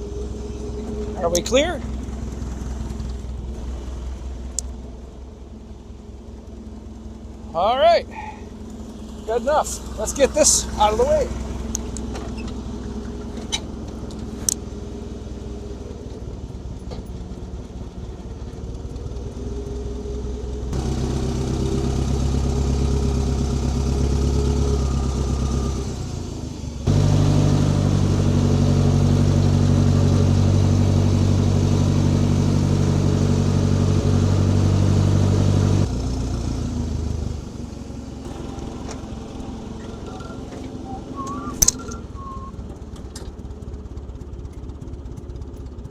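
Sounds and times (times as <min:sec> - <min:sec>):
machine engine revving: 0:20.7 - 0:42.6.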